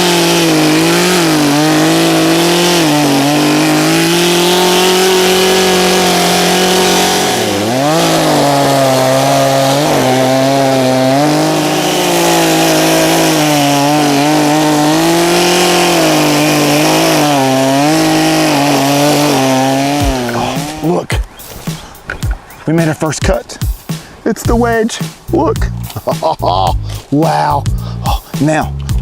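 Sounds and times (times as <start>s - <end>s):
chainsaw cutting tree trunk: 0.0s - 22.4s.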